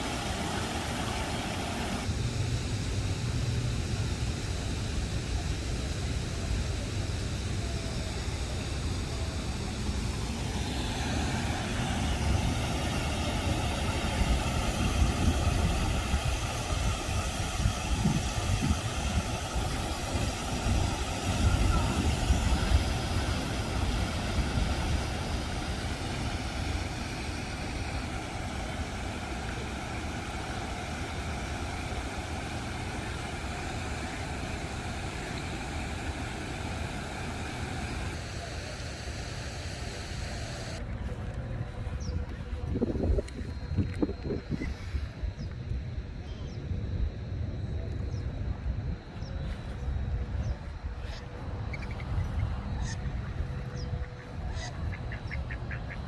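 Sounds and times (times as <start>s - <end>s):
waterfall rushing into pond: 0.0s - 2.1s, 7.5s - 40.8s.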